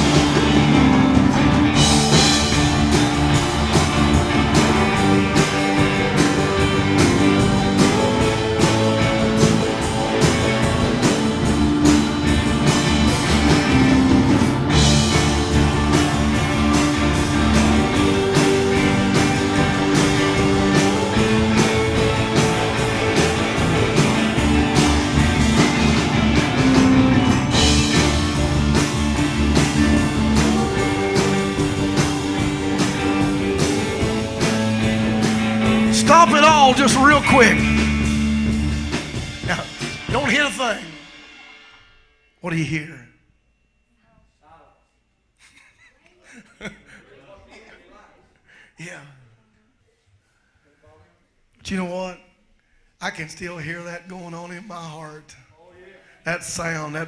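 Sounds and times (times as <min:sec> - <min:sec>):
upbeat band instrumental: 0:00.0 - 0:42.7.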